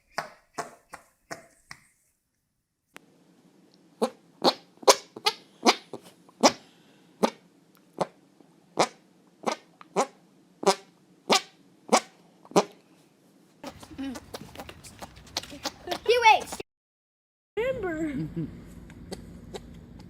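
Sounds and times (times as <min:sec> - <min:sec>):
armpit fart pops: 0:04.0 - 0:06.6, 0:08.8 - 0:12.8.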